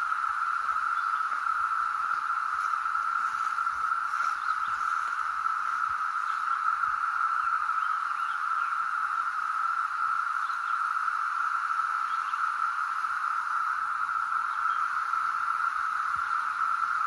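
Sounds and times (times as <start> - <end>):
cicadas droning: 0.0 - 17.0.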